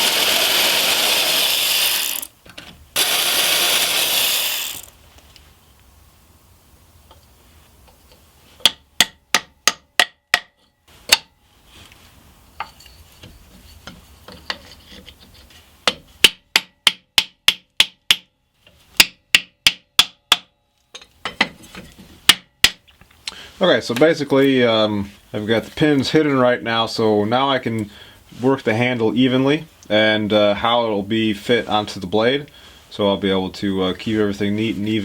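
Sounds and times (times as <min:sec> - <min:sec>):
hammer tapping: 0:08.6 - 0:11.3, 0:15.8 - 0:18.3, 0:19.0 - 0:20.5, 0:22.3 - 0:22.8.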